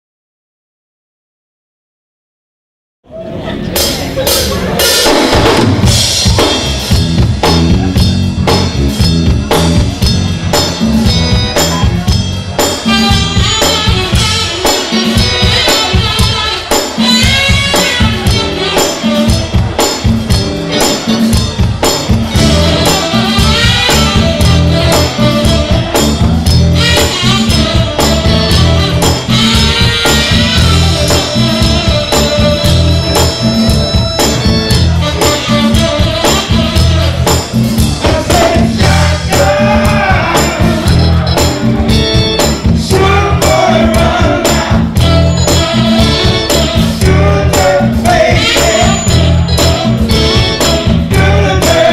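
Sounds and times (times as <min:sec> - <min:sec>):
soul band playing: 0:03.1 - 0:51.9
bending melodic lead line: 0:20.4 - 0:51.9.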